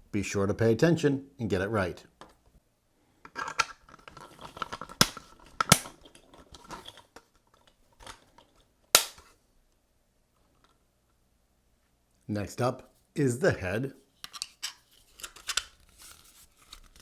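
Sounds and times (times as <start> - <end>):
plastic parts rustling: 3.3 - 8.6, 14.2 - 17.0
plastic parts snapping together: 4.8 - 6.0, 9.0 - 9.3.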